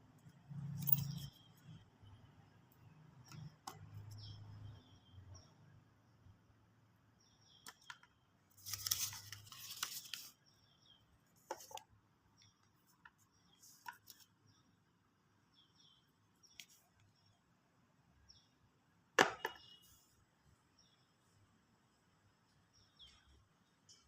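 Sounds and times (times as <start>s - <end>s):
packaging tearing and rustling: 8.6s - 10.3s.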